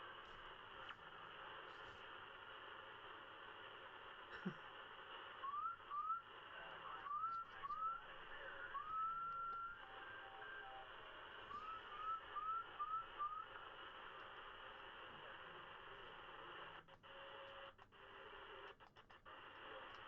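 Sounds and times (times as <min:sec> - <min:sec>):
radio band hiss: 0:00.0 - 0:20.0
radio chirps: 0:00.0 - 0:20.0
rising whistle-like radio tones: 0:05.4 - 0:13.7.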